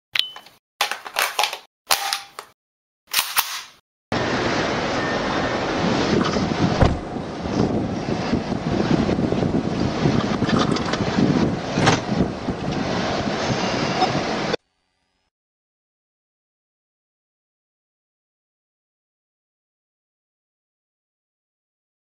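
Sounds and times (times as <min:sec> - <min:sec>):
road and wind noise: 0:04.1 - 0:14.6.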